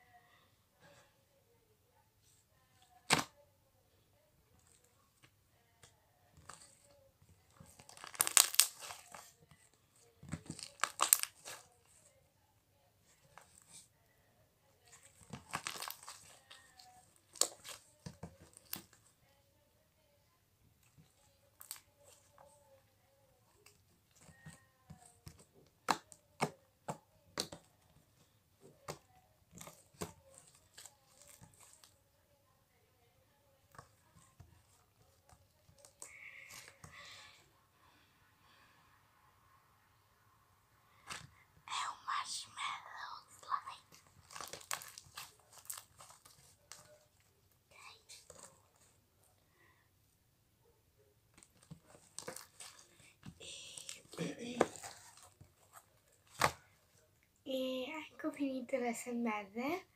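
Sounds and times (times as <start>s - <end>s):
slime squishing and popping: 7.6s - 9.3s, 10.3s - 11.7s, 15.2s - 16.5s, 44.2s - 46.8s
slime squeezed popping: 7.8s - 9.3s.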